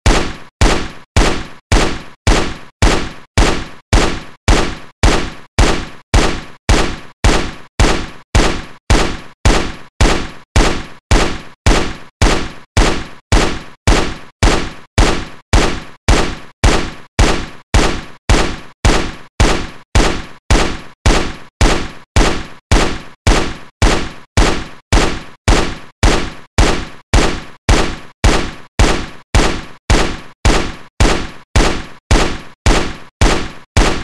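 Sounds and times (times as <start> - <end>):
rifle gunshots: 0.1 - 34.0.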